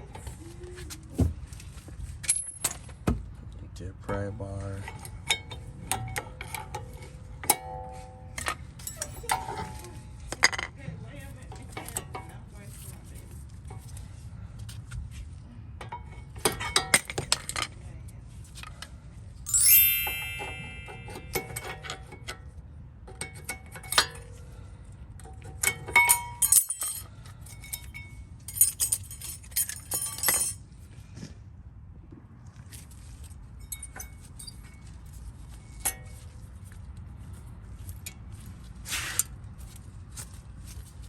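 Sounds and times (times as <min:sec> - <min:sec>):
metal tools clinking on brake caliper: 0:02.2 - 0:03.0, 0:04.1 - 0:10.8, 0:15.8 - 0:17.8, 0:18.7 - 0:30.7, 0:33.5 - 0:40.9
ringing metal clang: 0:19.5 - 0:21.8.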